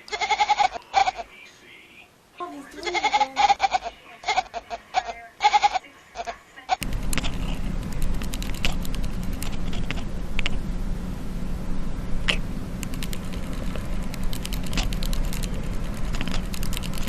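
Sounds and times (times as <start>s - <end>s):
cat meowing: 0.0s - 1.2s, 2.7s - 6.8s
steady low hum: 0.0s - 17.0s.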